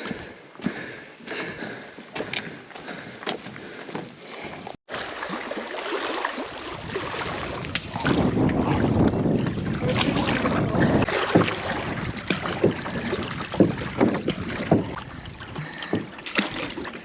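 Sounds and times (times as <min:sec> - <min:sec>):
paddle splashes: 0:03.6 - 0:17.0
paddle knocking hull: 0:04.9 - 0:17.0
wind and water rushing: 0:04.9 - 0:17.0.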